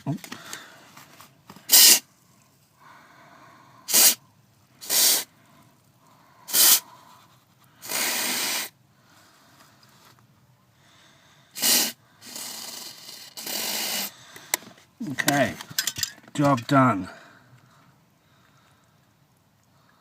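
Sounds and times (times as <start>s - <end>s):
aerosol spray hissing: 1.7s - 2.0s, 3.9s - 4.2s, 4.8s - 5.3s, 6.5s - 6.8s, 7.8s - 8.7s, 11.6s - 14.1s.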